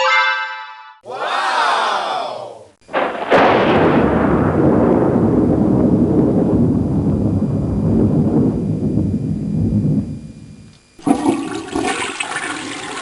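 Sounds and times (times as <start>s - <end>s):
sharp crack: 2.9s - 6.9s
long low rumble: 4.1s - 10.8s.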